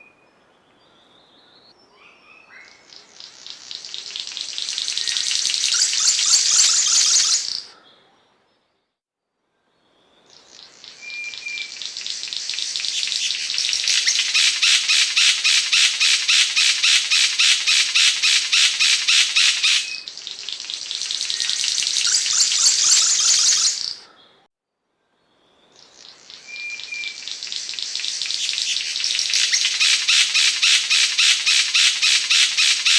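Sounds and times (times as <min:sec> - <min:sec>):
songbird rasping trill: 0:01.0 - 0:07.7, 0:10.1 - 0:24.4, 0:25.7 - 0:32.9.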